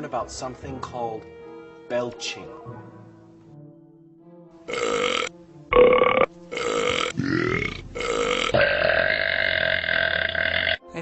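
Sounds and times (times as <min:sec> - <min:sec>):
person belching: 0:04.7 - 0:10.8.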